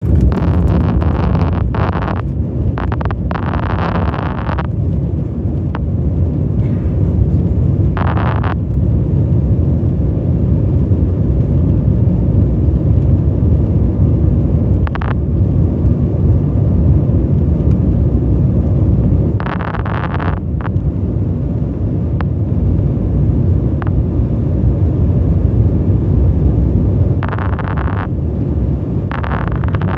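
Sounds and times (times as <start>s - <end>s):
jet engines rumbling: 0.0s - 29.9s.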